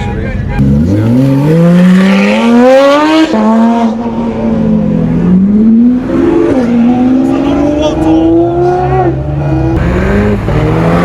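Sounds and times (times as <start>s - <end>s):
car engine accelerating hard: 0.6s - 11.0s.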